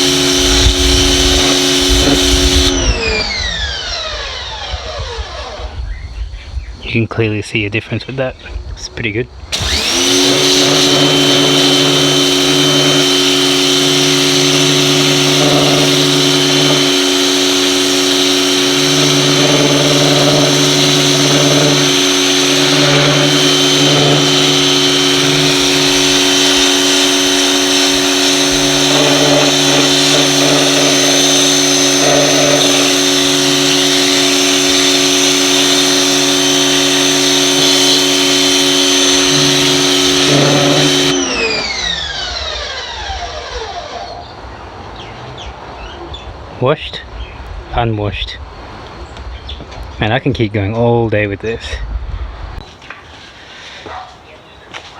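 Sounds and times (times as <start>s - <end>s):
water spraying from nozzle: 0.0s - 3.2s, 9.5s - 41.4s
pressure washer whining: 0.0s - 5.9s, 9.5s - 45.2s, 52.6s - 54.0s.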